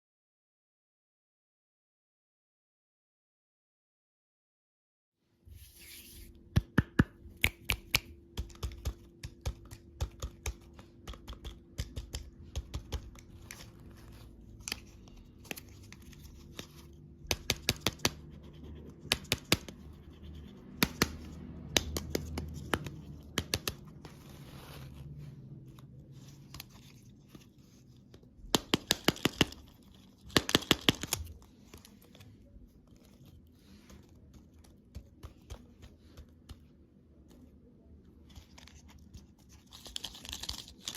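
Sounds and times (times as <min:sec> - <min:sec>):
packaging clicks and taps: 0:06.6 - 0:18.3, 0:19.0 - 0:19.8, 0:20.7 - 0:24.1, 0:28.1 - 0:32.3.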